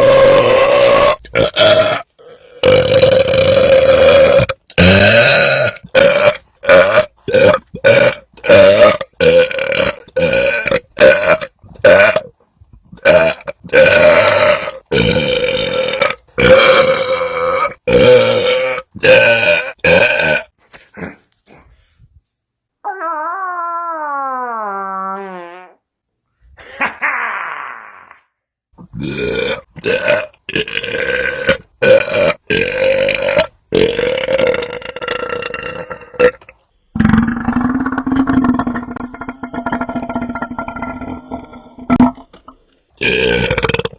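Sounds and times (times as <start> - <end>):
man belching: 0.0 - 12.3, 13.0 - 21.1, 28.8 - 42.2, 43.0 - 43.9.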